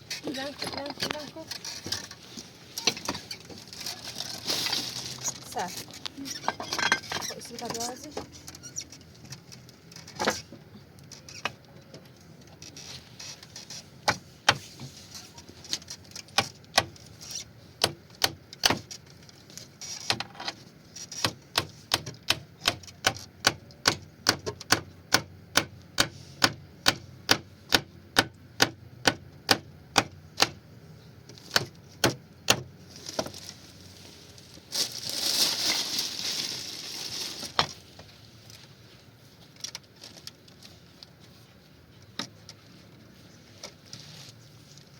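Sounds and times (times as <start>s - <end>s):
rustling or scraping: 0.0s - 11.7s, 12.4s - 16.3s, 32.8s - 44.9s.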